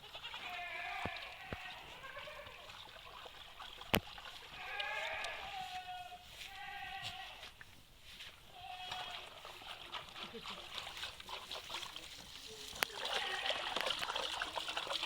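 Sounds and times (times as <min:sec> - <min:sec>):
goats bleating: 0:00.0 - 0:02.7, 0:04.4 - 0:07.5, 0:08.5 - 0:09.4, 0:12.8 - 0:14.0.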